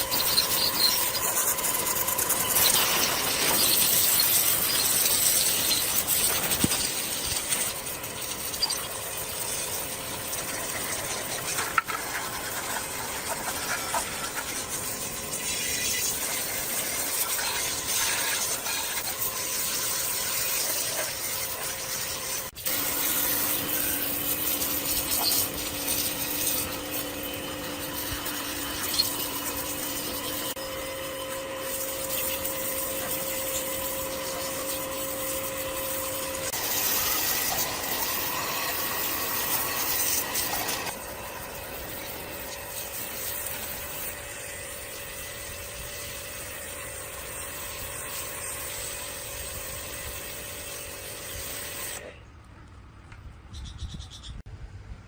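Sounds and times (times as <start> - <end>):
tool rubbing and scraping: 0.0 - 30.6.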